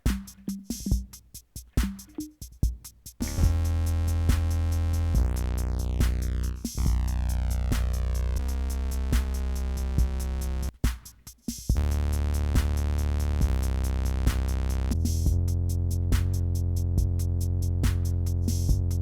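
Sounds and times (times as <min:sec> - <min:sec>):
fast ticking percussion: 0:00.0 - 0:10.7, 0:11.7 - 0:19.0
electronic drum pattern: 0:00.0 - 0:19.0
bass and synth chord: 0:03.2 - 0:10.7, 0:11.8 - 0:15.9.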